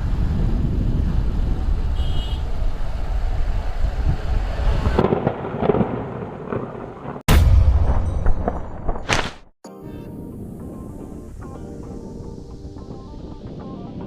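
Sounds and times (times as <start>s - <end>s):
vehicle road and wind noise: 0.0s - 7.1s.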